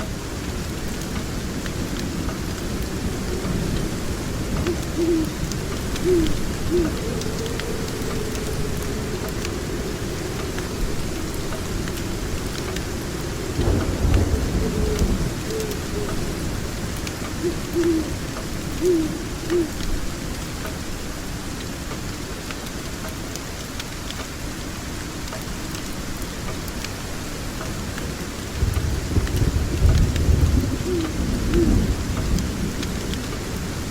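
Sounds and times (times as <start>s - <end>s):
thunder rumbling: 0.0s - 20.1s, 28.0s - 33.9s
steady rain: 0.0s - 33.9s
low hoots: 4.6s - 11.4s, 14.4s - 20.0s, 30.6s - 32.0s.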